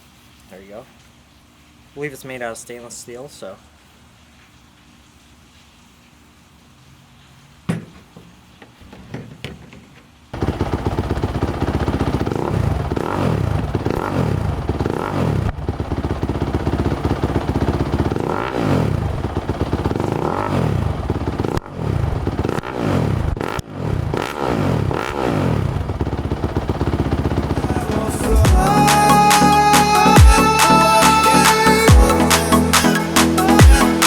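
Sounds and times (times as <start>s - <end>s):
light knocks: 7.7s - 10.1s
dirt bike engine revving: 10.4s - 34.0s.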